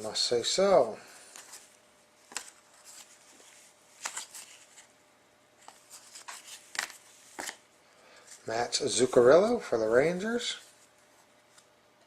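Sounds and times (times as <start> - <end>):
cards slapping and rustling: 1.2 - 4.9, 5.6 - 7.6.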